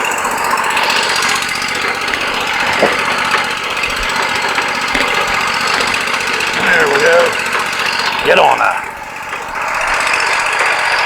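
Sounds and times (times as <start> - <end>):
sawmill running: 0.0 - 11.0.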